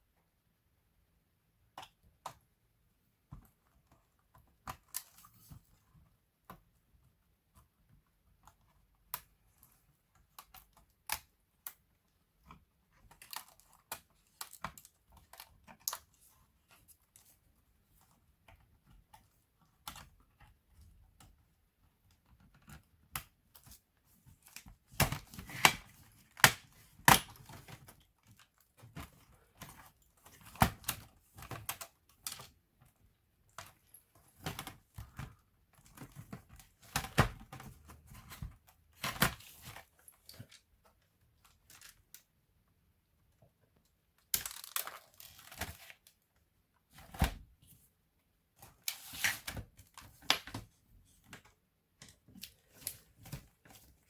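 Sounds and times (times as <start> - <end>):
plastic laptop casing clicks: 24.5 - 32.5.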